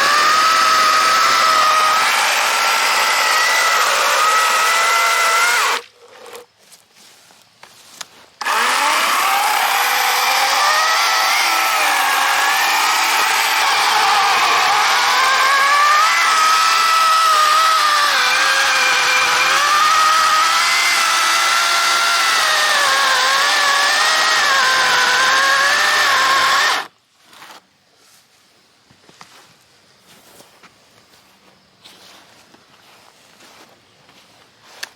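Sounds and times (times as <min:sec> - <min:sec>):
chainsaw cutting: 0:00.0 - 0:06.5, 0:08.4 - 0:26.9.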